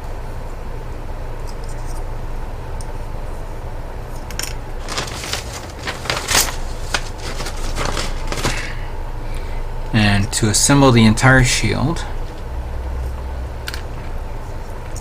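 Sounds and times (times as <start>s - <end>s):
steady low hum: 0.0s - 15.0s
plastic parts clicking and rattling: 4.3s - 8.7s.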